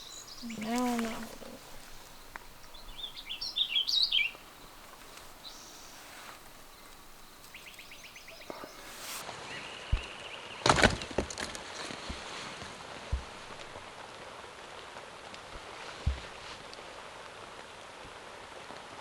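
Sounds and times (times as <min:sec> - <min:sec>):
small birds chirping: 0:00.0 - 0:10.6.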